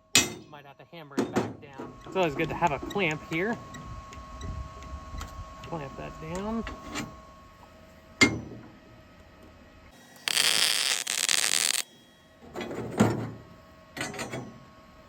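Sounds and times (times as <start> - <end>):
welder arc crackling hiss: 10.2 - 11.8.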